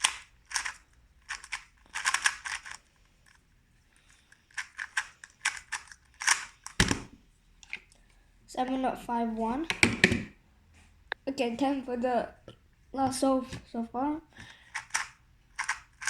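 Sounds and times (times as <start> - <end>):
speed cube clicking: 0.0 - 3.4, 4.0 - 7.1, 14.6 - 16.0.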